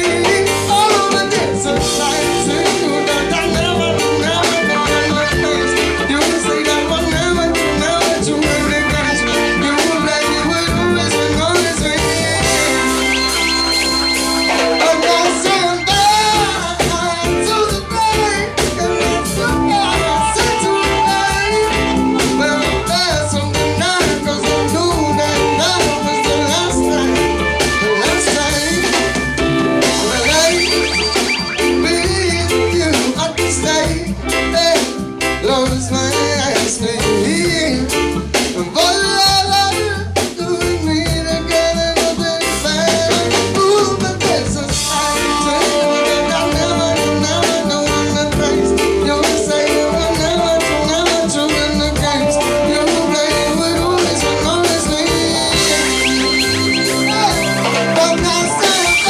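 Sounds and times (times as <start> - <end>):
steady beat: 0.0 - 34.2, 52.0 - 59.0
acoustic guitar: 0.0 - 59.0
man singing: 0.0 - 59.0.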